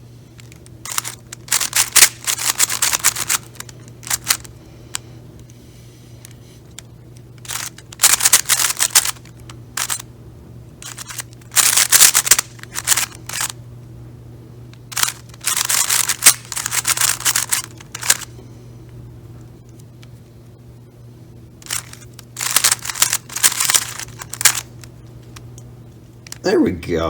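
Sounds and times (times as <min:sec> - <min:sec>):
plastic cube layers clicking: 0:00.4 - 0:04.5, 0:06.7 - 0:10.0, 0:10.8 - 0:13.5, 0:14.8 - 0:18.3, 0:21.6 - 0:24.9.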